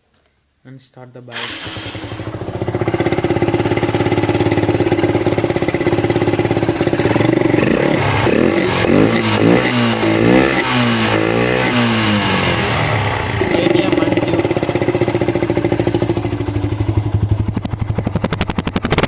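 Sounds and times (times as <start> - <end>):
motorcycle engine revving: 1.3 - 19.0
motorcycle engine idling: 1.4 - 19.0.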